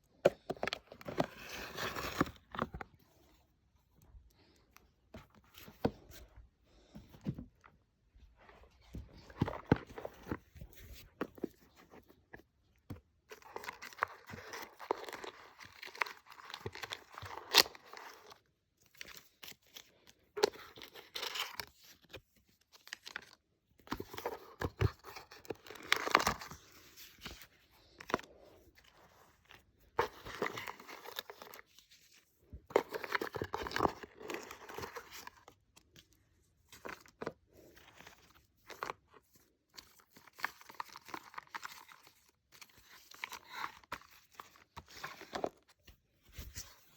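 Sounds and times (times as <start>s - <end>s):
packaging rustling and tearing: 32.8s - 35.5s.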